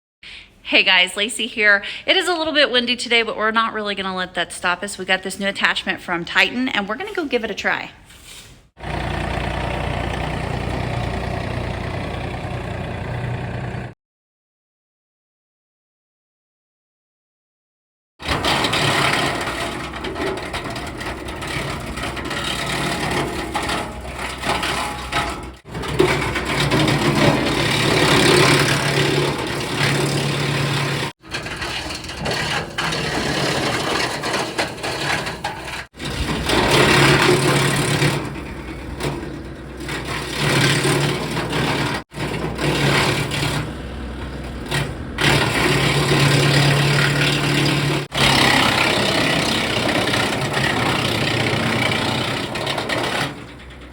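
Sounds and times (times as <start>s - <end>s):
wood chipper clatter: 8.8s - 13.9s, 18.2s - 53.9s
tractor engine hum: 8.8s - 14.0s, 18.4s - 53.9s.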